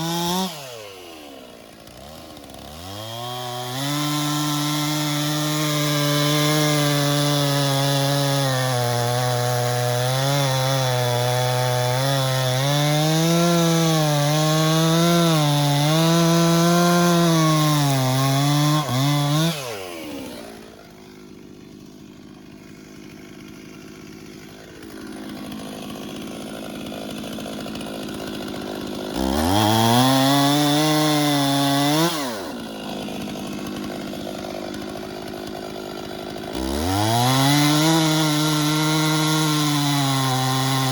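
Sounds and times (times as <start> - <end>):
chainsaw engine revving and idling: 0.0 - 40.9.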